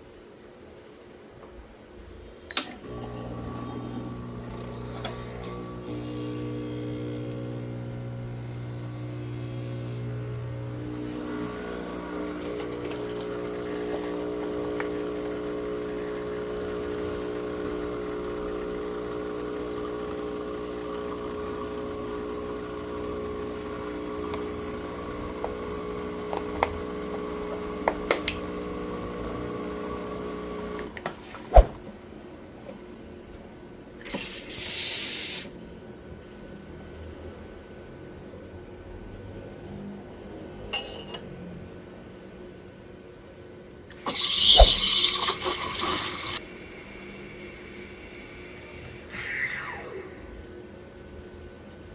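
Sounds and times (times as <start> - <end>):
espresso machine pump humming: 2.7 - 31.8, 34.1 - 35.5, 43.9 - 49.2.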